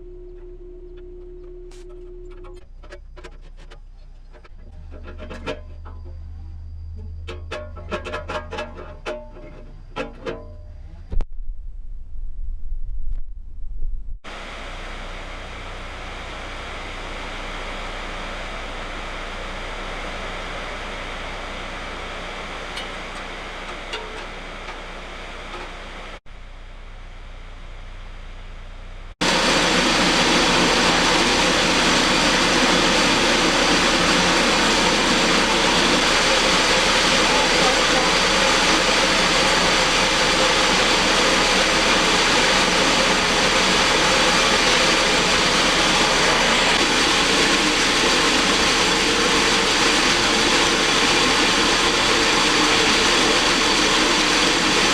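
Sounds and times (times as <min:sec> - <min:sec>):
machine running: 0:14.2 - 0:54.9.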